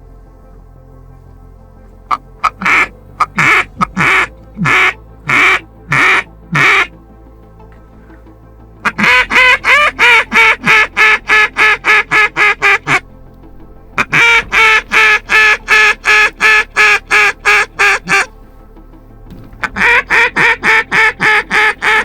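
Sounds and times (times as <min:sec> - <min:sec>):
duck call quacking: 0:02.1 - 0:06.9, 0:08.9 - 0:13.0, 0:14.0 - 0:18.3, 0:19.7 - 0:22.0.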